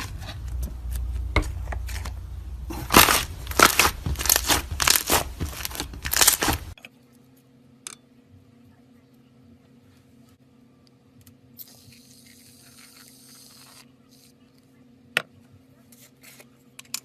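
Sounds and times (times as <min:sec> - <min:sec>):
slime squelching: 0:00.0 - 0:06.8.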